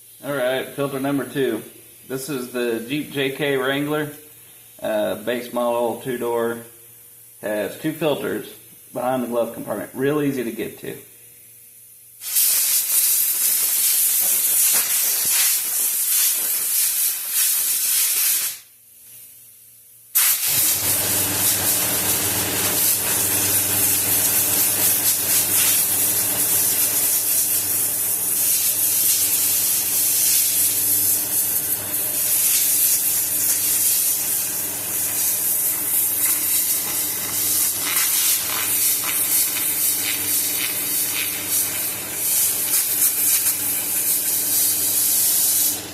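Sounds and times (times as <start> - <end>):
air compressor humming: 0.0 - 19.4, 20.1 - 45.9
compressed air hissing from blow gun: 12.2 - 18.7, 20.2 - 45.8.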